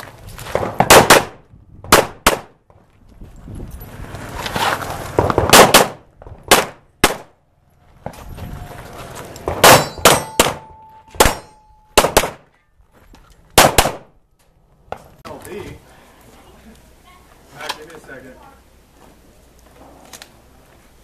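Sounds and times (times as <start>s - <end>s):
pistol shots: 0.6s - 2.6s, 5.3s - 7.3s, 9.5s - 12.4s, 13.6s - 14.1s
steel targets clanging: 9.6s - 12.0s.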